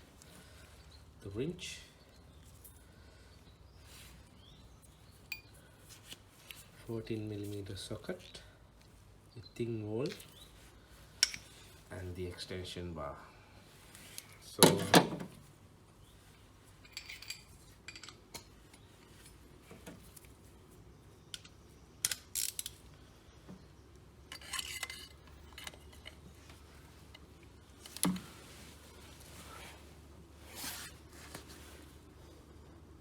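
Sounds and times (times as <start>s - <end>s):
metal tools clinking: 16.8s - 19.4s, 24.3s - 26.3s.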